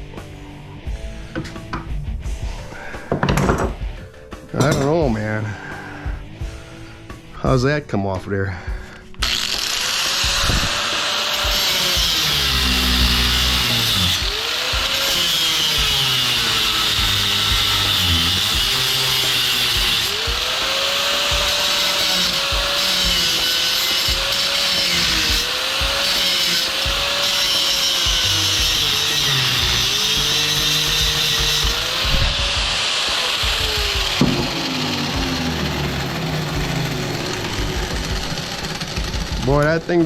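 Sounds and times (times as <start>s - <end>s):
power tool grinding metal: 9.2s - 40.0s.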